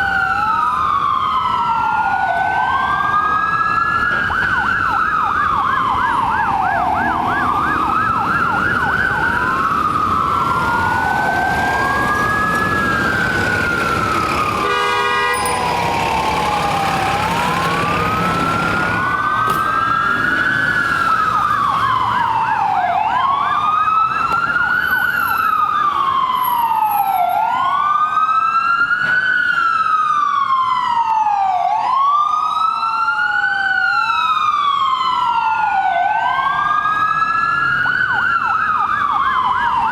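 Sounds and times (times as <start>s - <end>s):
ambulance siren wailing: 0.0s - 39.9s
steady horn-like tone: 14.6s - 15.8s.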